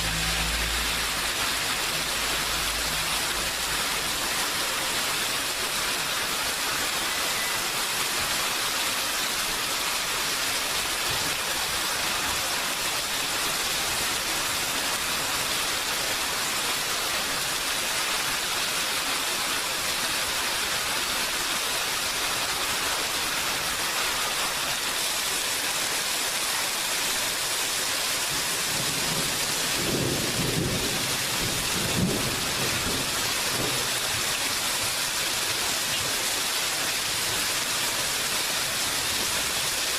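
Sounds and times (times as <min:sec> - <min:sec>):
steady rain: 0:00.0 - 0:39.9
low rumble of thunder: 0:28.6 - 0:34.2.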